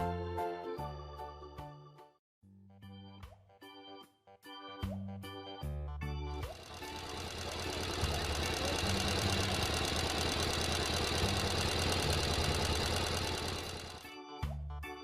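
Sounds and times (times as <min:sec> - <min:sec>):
car engine running: 0:06.4 - 0:14.1.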